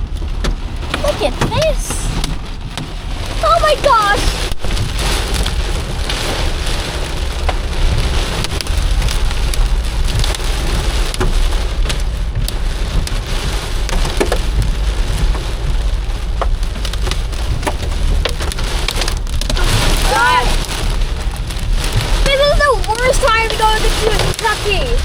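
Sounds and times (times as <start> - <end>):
hailstones ticking: 0.0 - 25.0
rain hissing on car: 0.0 - 25.0
car droning on road: 4.5 - 22.3.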